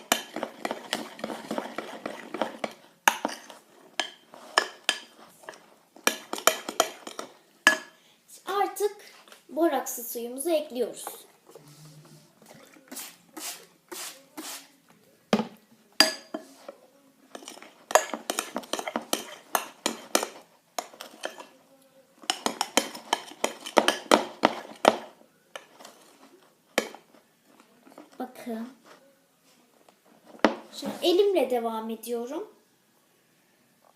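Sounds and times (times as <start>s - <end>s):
spoon stirring slime in bowl: 0.0s - 8.0s, 11.0s - 14.6s, 16.0s - 28.2s.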